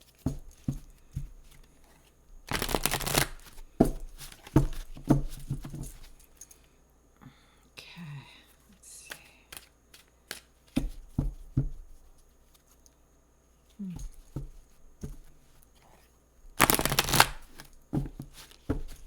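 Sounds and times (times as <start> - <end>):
cards being shuffled by hand: 0.0 - 6.2, 9.1 - 11.1, 16.6 - 19.0
rapid flutter of cards: 16.6 - 17.6.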